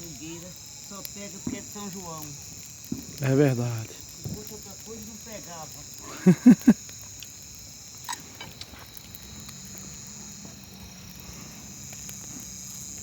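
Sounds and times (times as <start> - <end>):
bonfire crackling: 0.0 - 13.0
night insects chirring: 0.0 - 13.0.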